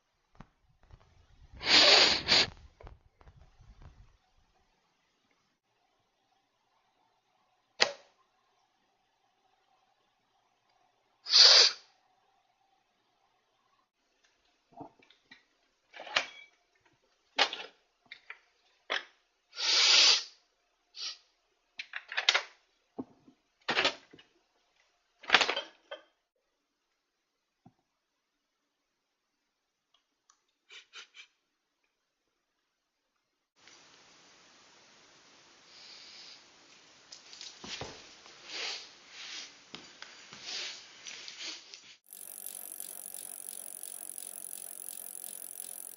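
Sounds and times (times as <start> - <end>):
person sniffing and snorting: 1.6 - 2.6, 11.3 - 11.8
mechanical ratcheting clicks: 42.1 - 45.9.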